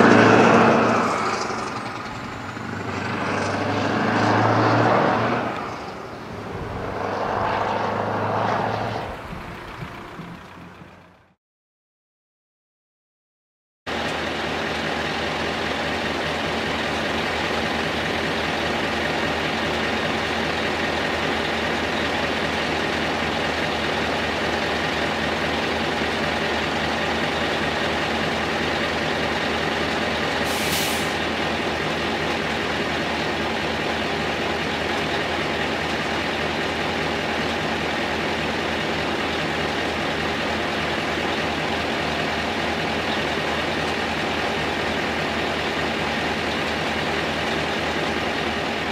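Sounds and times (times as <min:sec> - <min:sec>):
diesel engine idling: 0:00.0 - 0:04.0, 0:05.3 - 0:11.4, 0:13.9 - 0:48.9
compressed air hiss: 0:30.5 - 0:31.2.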